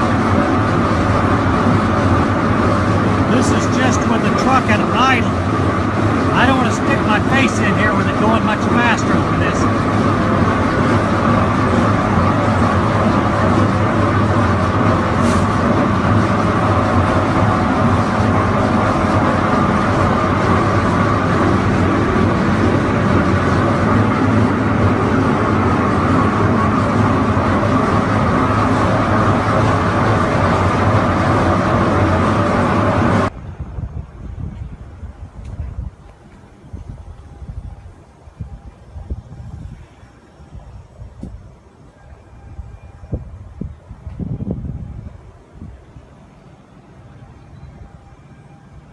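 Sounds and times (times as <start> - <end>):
grinder machine idling: 0.0 - 33.3.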